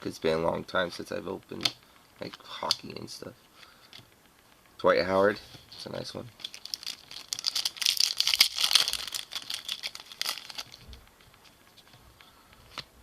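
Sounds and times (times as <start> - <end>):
trading cards crinkling and rustling: 0.6 - 13.0.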